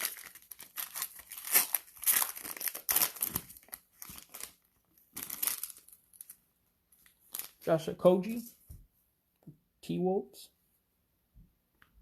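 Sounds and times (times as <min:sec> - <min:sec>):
cellophane wrapper crinkling: 0:00.0 - 0:07.7.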